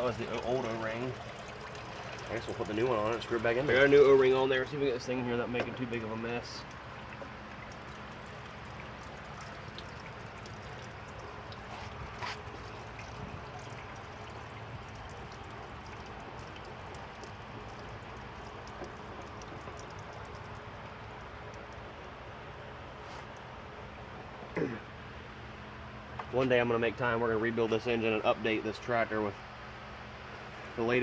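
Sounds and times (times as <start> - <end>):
liquid pouring: 0.0 - 22.6.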